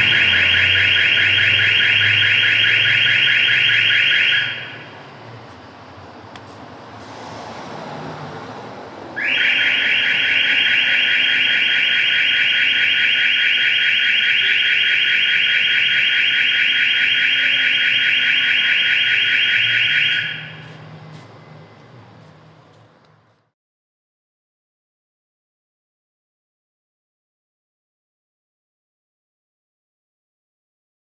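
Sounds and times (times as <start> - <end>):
high-pitched pulsing building alarm: 0.0 - 5.4, 9.1 - 22.6.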